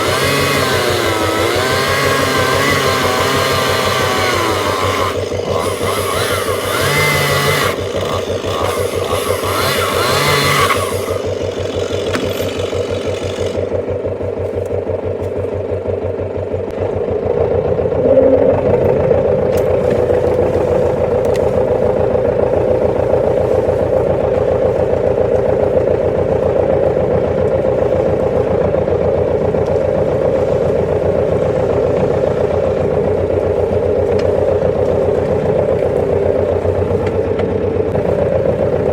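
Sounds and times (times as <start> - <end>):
higher-pitched engine revving: 0.0 - 13.7
tractor engine running: 0.0 - 38.9.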